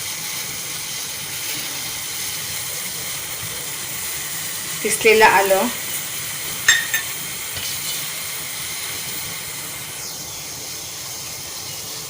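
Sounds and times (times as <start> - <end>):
ringing clink: 6.7 - 7.1.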